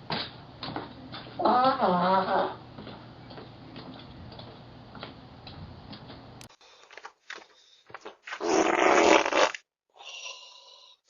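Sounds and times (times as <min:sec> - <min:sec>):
loud fart: 0:01.4 - 0:02.6, 0:08.4 - 0:09.6.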